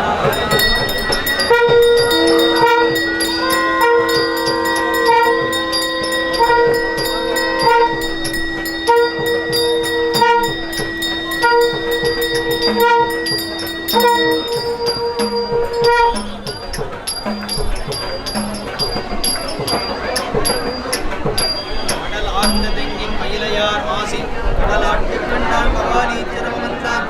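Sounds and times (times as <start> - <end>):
reed instrument melody: 0.0 - 22.8
held drone note: 0.0 - 23.0
small hand cymbals: 0.0 - 23.3.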